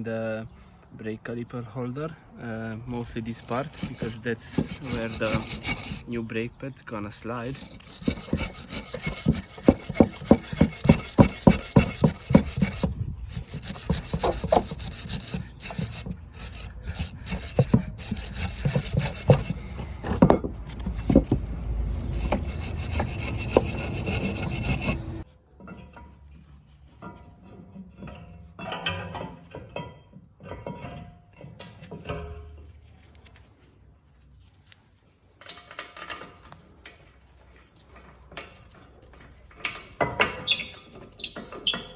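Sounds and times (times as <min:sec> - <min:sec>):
rasping scrubbing strokes on metal: 0:03.1 - 0:06.1, 0:07.3 - 0:25.3.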